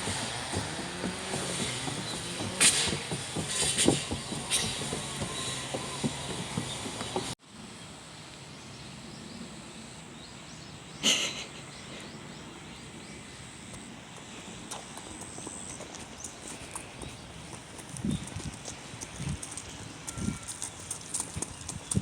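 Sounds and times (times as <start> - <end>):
child's running footsteps: 0.0 - 7.4, 13.8 - 22.0
outdoor background noise: 0.0 - 22.0.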